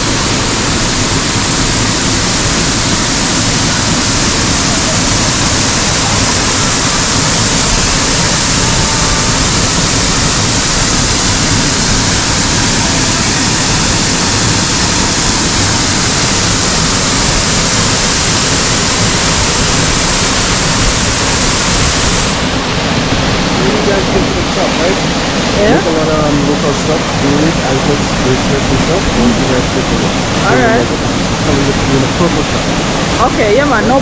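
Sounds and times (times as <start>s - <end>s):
waterfall rushing: 0.0s - 34.0s.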